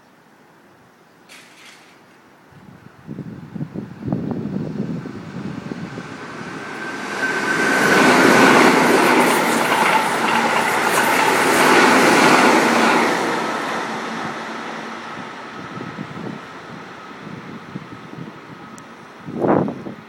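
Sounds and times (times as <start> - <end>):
electric train passing on rails: 2.2 - 20.0
rail clatter: 5.8 - 14.9.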